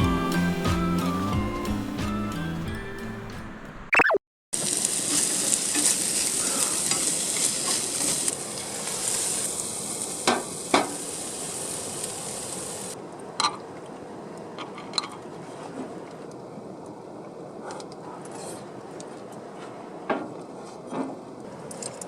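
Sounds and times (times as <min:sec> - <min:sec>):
food sizzling in a pan: 0:04.6 - 0:13.0.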